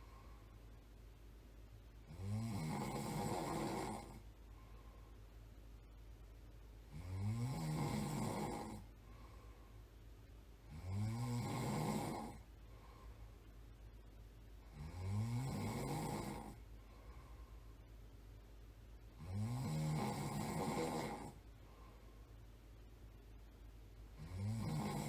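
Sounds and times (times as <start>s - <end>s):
person snoring: 2.0s - 4.2s, 6.9s - 8.9s, 10.7s - 12.4s, 14.6s - 17.3s, 19.2s - 21.4s, 24.2s - 25.0s.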